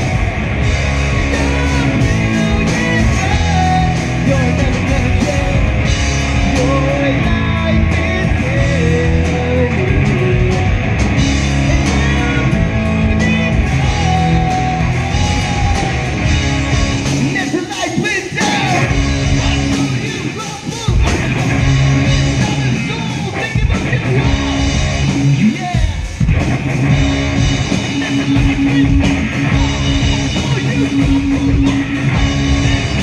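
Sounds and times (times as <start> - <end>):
bass guitar: 0.0 - 33.0
electric guitars: 0.0 - 33.0
steady drum beat: 0.0 - 33.0
person singing: 1.3 - 5.7, 11.6 - 16.2.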